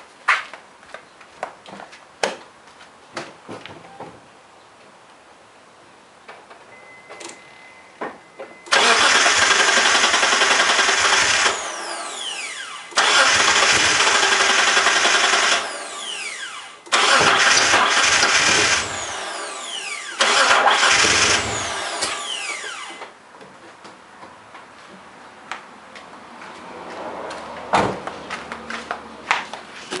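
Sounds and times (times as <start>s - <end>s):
starter motor cranking engine: 8.7s - 23.0s.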